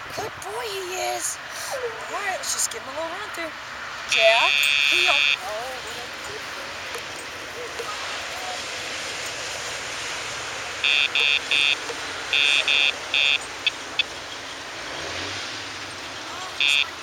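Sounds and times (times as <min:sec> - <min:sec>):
steady outdoor noise: 0:00.0 - 0:17.0
short high-pitched electronic beeps: 0:10.8 - 0:14.1.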